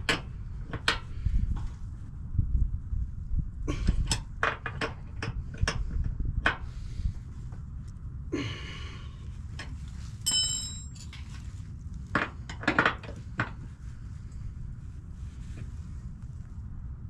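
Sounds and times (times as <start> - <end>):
metal tools clinking and knocking: 9.6 - 11.4
bright metallic ring: 10.2 - 11.1.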